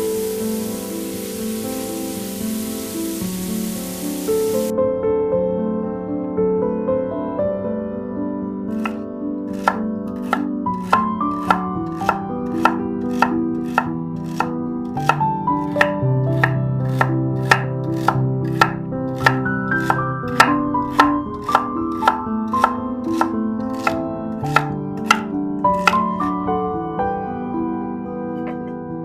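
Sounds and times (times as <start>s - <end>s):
soft piano music: 0.0s - 29.0s
knife chopping on cutting board: 8.8s - 26.3s.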